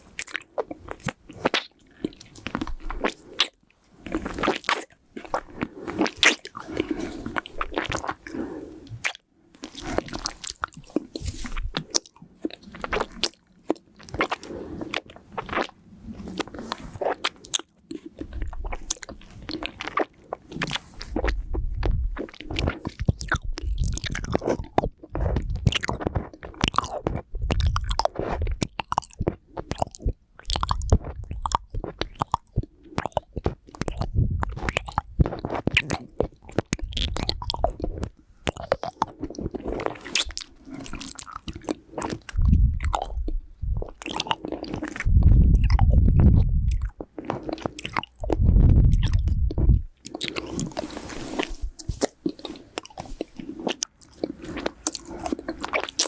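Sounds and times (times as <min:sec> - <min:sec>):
candy clicking and crunching on teeth: 0:09.0 - 0:50.8, 0:51.8 - 0:56.0
nose breaths on microphone: 0:48.3 - 0:53.6.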